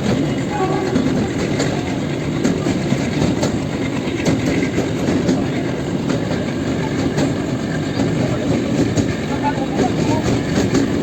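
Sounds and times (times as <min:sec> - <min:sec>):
train rumbling on rails: 0:00.0 - 0:11.0
wheels clacking over rail joints: 0:00.0 - 0:11.0.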